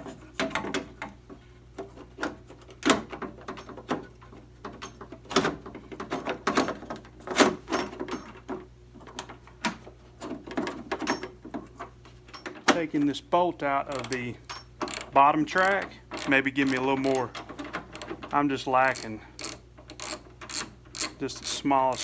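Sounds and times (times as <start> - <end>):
metal clicks and rattles: 1.8 - 13.1, 13.8 - 22.0.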